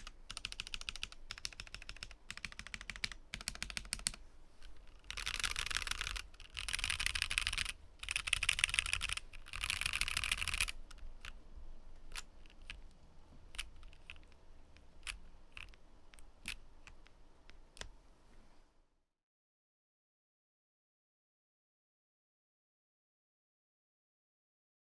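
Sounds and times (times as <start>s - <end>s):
mechanical keyboard typing: 0.0s - 4.2s, 4.8s - 11.4s, 13.5s - 14.4s, 15.0s - 17.9s.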